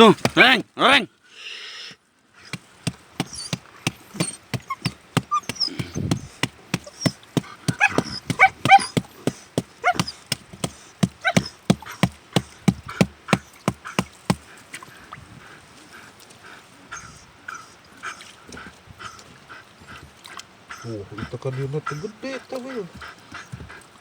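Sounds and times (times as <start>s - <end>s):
dog yelping: 3.2s - 12.1s
dog barking rapidly: 3.2s - 14.0s.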